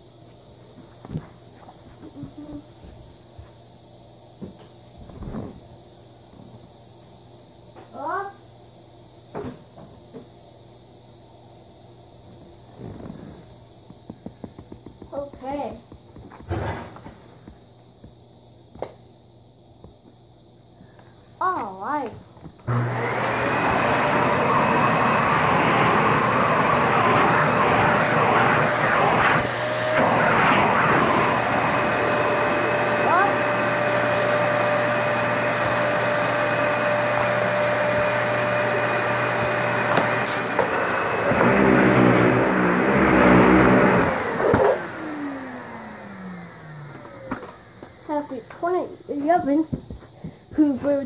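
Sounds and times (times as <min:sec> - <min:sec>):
vacuum cleaner motor whine: 0:22.4 - 0:48.5.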